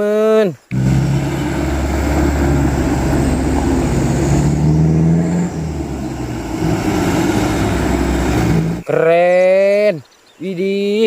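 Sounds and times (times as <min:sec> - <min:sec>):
truck engine rumbling: 0:00.7 - 0:08.9.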